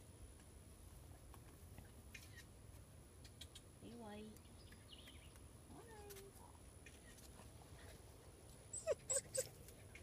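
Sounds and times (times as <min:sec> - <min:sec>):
puppy whimpering: 0:08.7 - 0:09.6
puppy yelp: 0:08.7 - 0:09.6.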